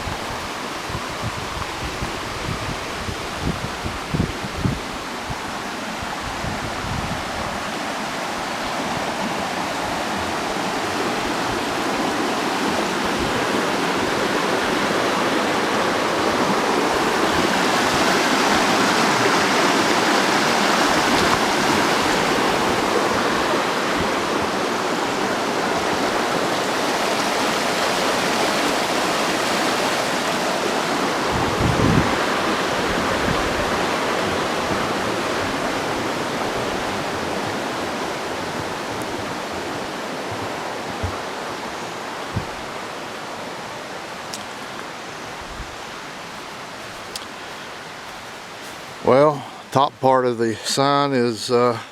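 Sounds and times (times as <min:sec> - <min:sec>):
rushing stream: 0:00.0 - 0:51.9
low thump: 0:42.3 - 0:42.6.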